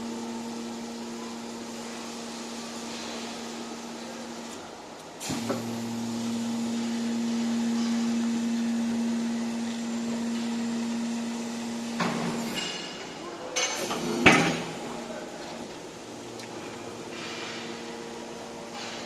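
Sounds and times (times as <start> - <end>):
machine hum: 5.2 - 12.6, 14.0 - 19.0
metal clanks and knocks: 13.6 - 14.8.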